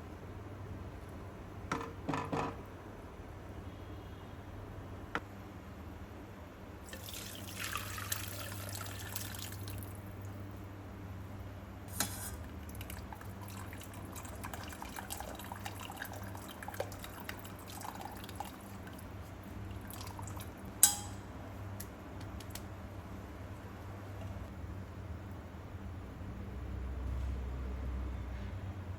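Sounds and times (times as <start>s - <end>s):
liquid pouring into a pot: 6.9s - 10.2s, 12.3s - 21.0s.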